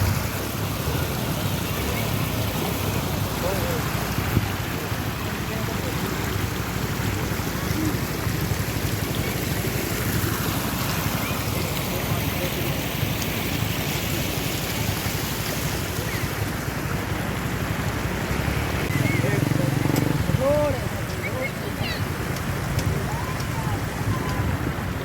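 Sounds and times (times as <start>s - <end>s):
floodwater rushing: 0.0s - 25.0s
wind buffeting microphone: 18.8s - 25.0s.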